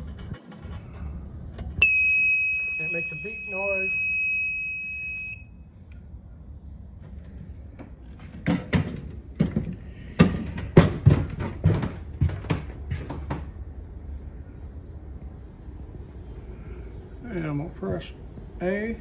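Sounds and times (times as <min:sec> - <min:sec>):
low background hum: 0:00.0 - 0:19.0
sharp knocks and clicks: 0:07.8 - 0:13.5.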